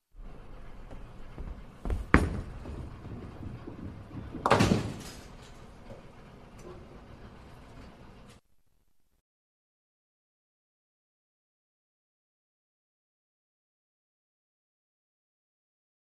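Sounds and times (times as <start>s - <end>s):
bowling ball rolling: 0.2s - 8.3s
bowling pins crashing: 0.9s - 6.0s.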